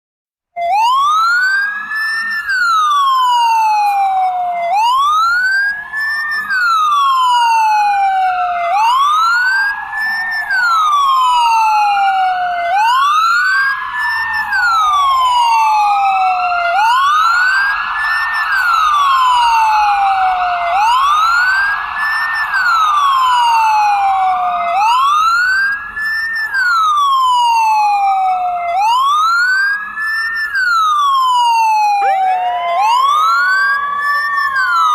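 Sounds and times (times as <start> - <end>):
ambulance siren wailing: 0.6 - 34.9
fainter second siren wail: 0.6 - 34.9.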